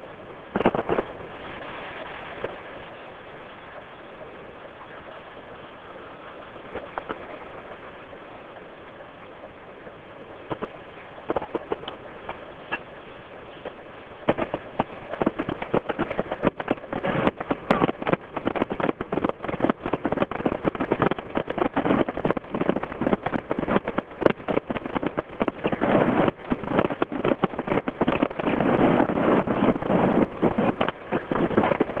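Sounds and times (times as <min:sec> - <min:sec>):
fireworks bangs and crackles: 0:14.2 - 0:32.0.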